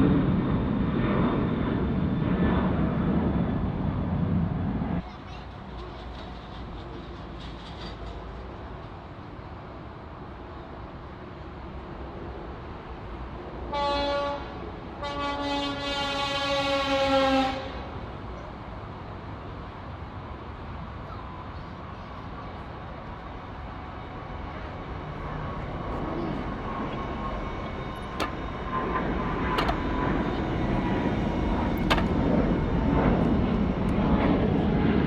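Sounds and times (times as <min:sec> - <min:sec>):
rumble of passing train: 0:00.0 - 0:35.0
train horn blasts: 0:13.7 - 0:18.0.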